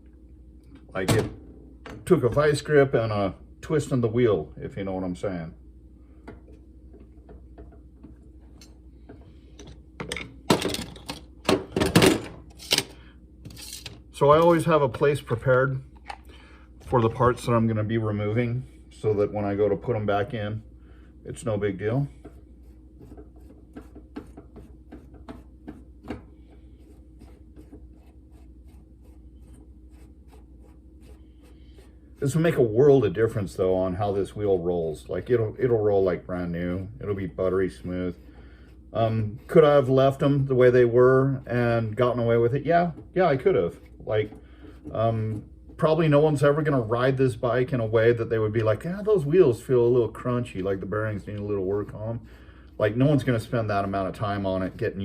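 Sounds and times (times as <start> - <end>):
metal parts and tools clattering: 9.6 - 14.0.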